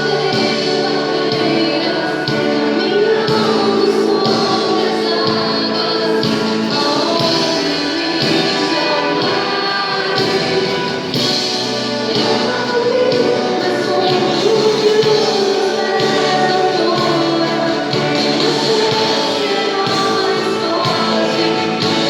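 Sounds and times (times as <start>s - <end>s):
group singing praise song: 0.0s - 22.0s
instrumental accompaniment: 0.0s - 22.0s.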